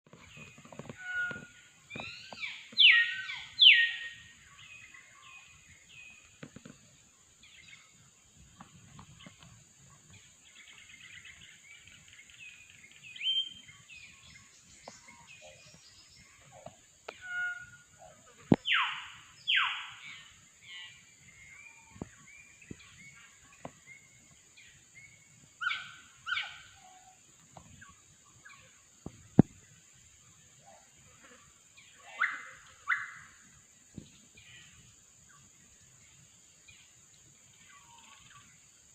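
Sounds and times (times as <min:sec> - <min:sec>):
soft bird chirps: 0:00.1 - 0:29.8.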